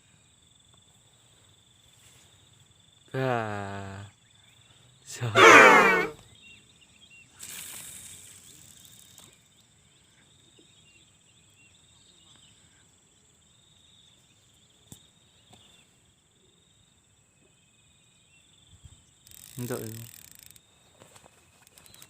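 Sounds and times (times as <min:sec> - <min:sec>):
insect chirring: 0:19.0 - 0:20.8, 0:21.6 - 0:22.0.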